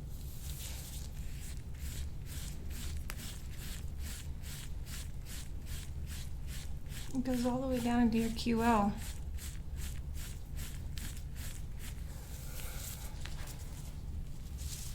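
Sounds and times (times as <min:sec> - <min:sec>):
low steady hum: 0:00.0 - 0:14.9
hands rubbing skin: 0:09.0 - 0:14.9.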